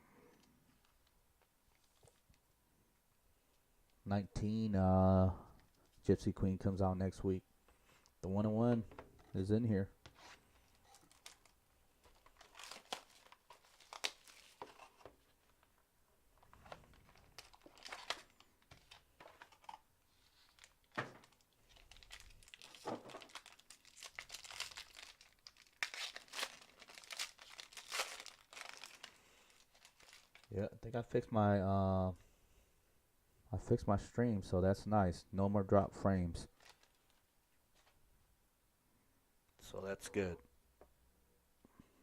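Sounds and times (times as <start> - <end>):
wrapping crinkling and tearing: 10.6 - 15.6, 16.5 - 30.5, 36.5 - 37.2.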